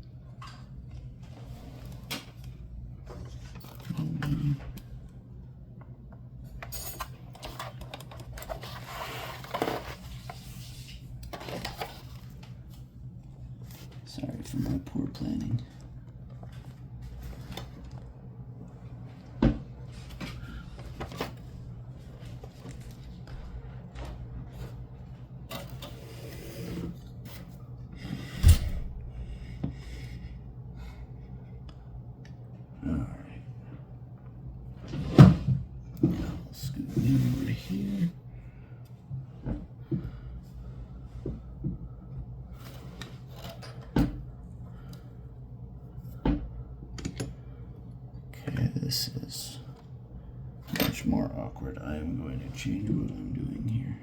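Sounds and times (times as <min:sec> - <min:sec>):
low steady hum: 0:00.0 - 0:54.0
rubbing and scraping: 0:08.4 - 0:12.2.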